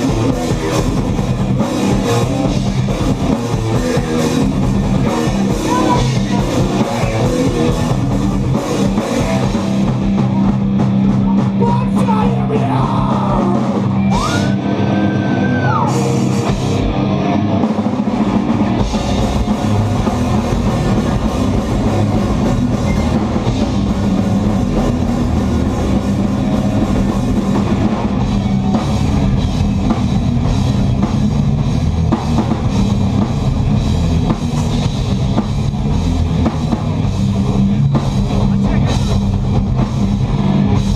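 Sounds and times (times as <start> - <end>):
distorted electric guitars: 0.0 - 40.9
drum kit: 0.0 - 40.9.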